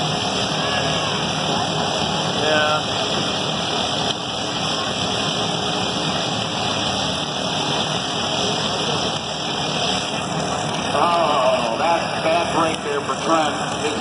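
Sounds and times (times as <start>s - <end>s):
lawn mower engines running: 0.0s - 14.0s.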